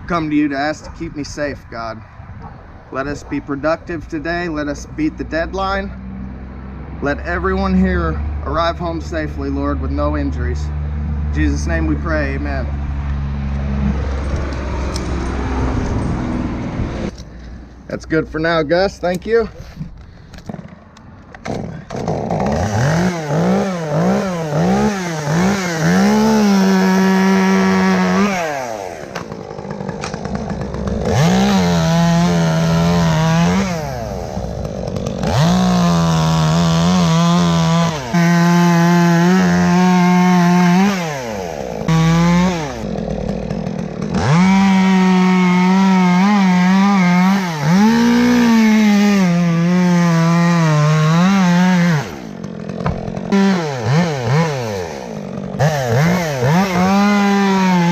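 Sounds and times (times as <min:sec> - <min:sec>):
chainsaw revving and cutting wood: 0:03.7 - 0:20.8, 0:21.4 - 0:57.9.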